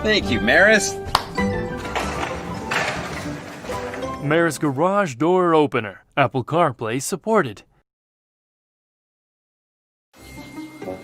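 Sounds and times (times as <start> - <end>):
background music with held notes: 0.0 - 4.8, 10.2 - 11.0.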